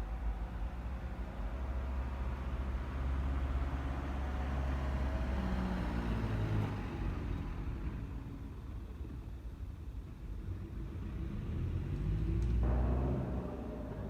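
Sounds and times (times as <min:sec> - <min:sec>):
diesel engine rumble: 0:12.4 - 0:14.0.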